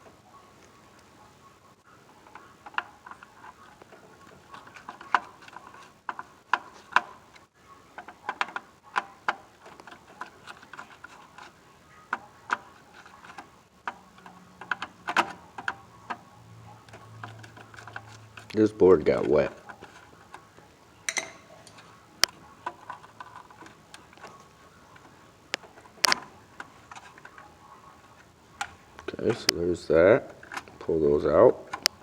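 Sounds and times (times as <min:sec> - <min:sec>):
small clicks and taps of wires: 0:16.9 - 0:27.5.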